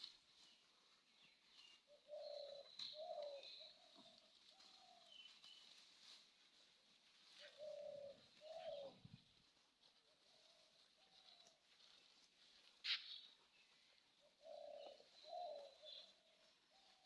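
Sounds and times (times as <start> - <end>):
small birds chirping: 0.0 - 6.2, 10.3 - 17.0
dove cooing: 1.9 - 5.1, 7.4 - 9.2, 14.2 - 17.0.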